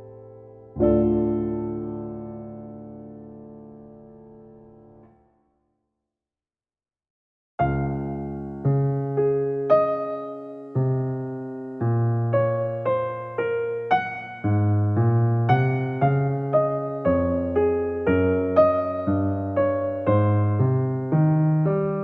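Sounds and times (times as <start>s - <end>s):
gentle keyboard melody: 0.0s - 5.2s, 7.6s - 22.0s.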